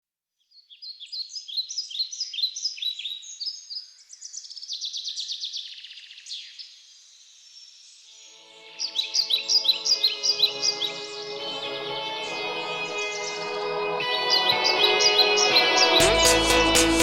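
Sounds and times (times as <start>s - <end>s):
birds chirping: 0.7s - 17.0s
bird trill: 8.2s - 11.6s.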